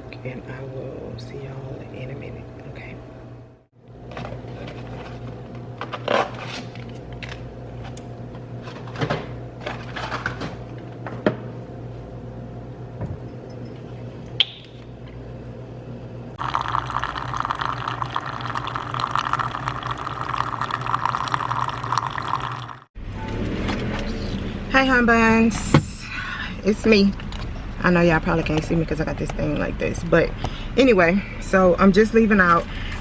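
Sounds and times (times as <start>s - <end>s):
cups and utensils clinking: 16.4s - 22.8s
water filling a vessel: 16.4s - 22.9s.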